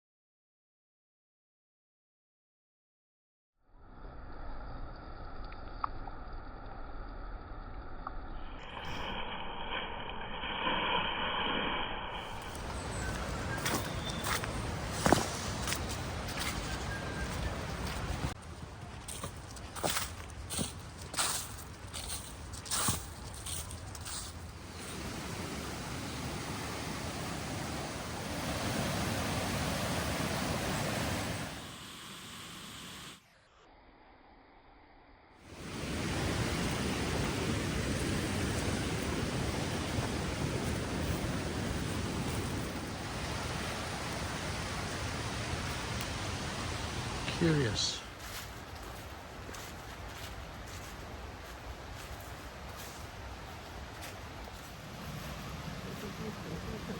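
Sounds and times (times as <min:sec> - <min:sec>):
river water rushing: 0:12.2 - 0:18.6, 0:23.4 - 0:33.1, 0:35.5 - 0:48.0.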